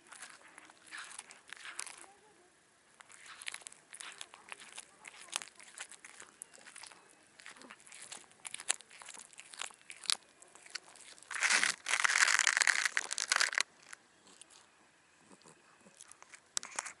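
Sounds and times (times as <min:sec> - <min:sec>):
cat chewing raw fish: 0:00.0 - 0:02.3, 0:02.9 - 0:17.0.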